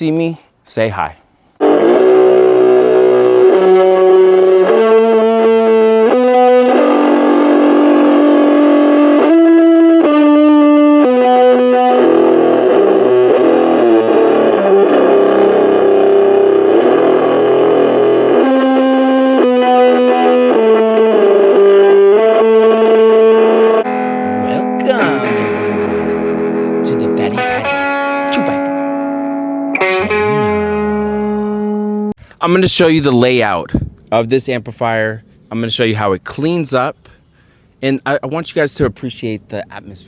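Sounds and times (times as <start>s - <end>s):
distorted electric guitar chords: 1.6s - 32.2s.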